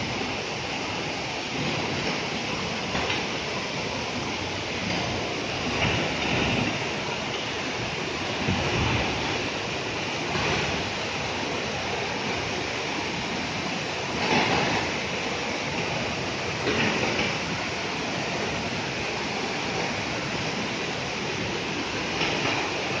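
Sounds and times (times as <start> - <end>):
waterfall water rushing: 0.0 - 23.0.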